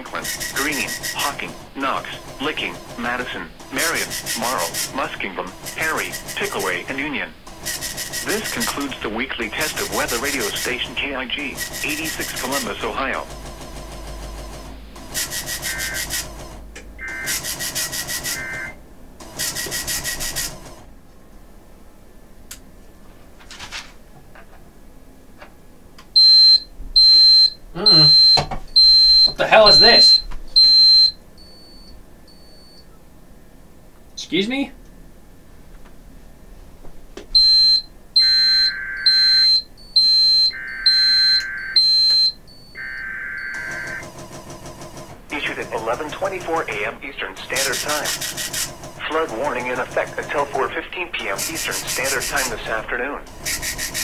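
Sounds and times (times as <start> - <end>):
screeching digital data bursts: 7.7 - 13.3, 15.2 - 16.3, 17.0 - 18.8, 27.8 - 31.2, 37.4 - 44.1
buzzy digital data warble: 15.2 - 16.2
high-pitched beep: 26.2 - 32.8.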